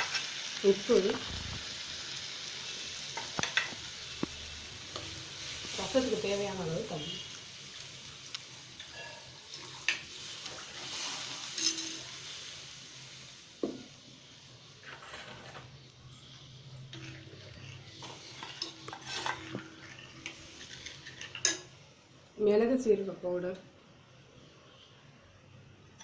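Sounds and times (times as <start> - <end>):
faint sizzle: 0.0 - 26.0
spoon stirring and clinking in pot: 11.4 - 12.2, 16.9 - 21.7.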